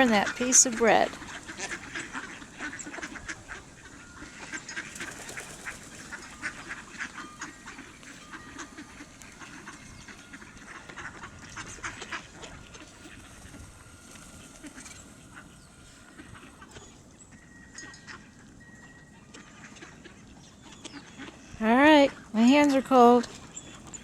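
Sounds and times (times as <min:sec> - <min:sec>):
ducks quacking softly: 0:00.0 - 0:18.5, 0:19.2 - 0:24.0.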